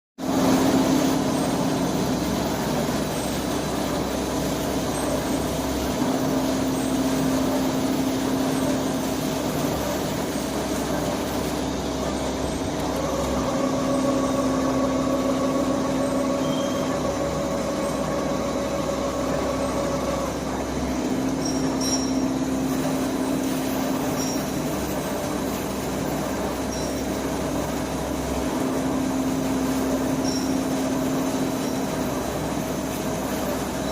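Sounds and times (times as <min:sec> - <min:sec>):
lathe machine hum: 0:00.2 - 0:33.9
higher machine tones: 0:11.4 - 0:25.1.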